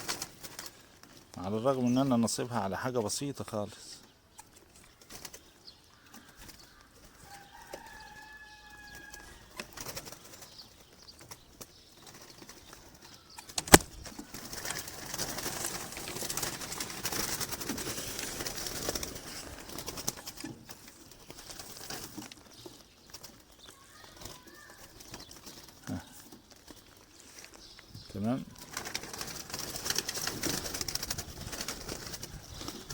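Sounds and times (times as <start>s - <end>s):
pigeon wings flapping: 0.0s - 1.1s, 13.6s - 22.3s, 28.5s - 32.9s
loud sharp snap: 13.6s - 14.0s.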